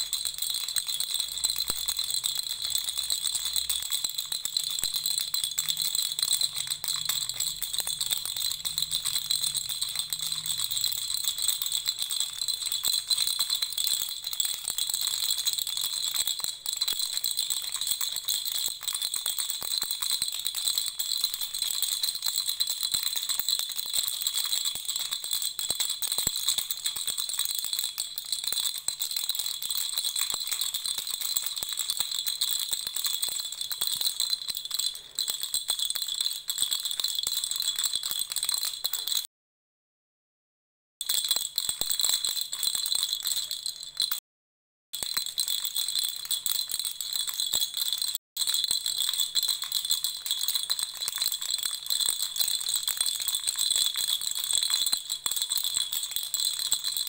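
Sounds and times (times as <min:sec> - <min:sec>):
baby rattle shaken: 0:00.0 - 0:39.3, 0:41.0 - 0:44.2, 0:45.0 - 0:57.0.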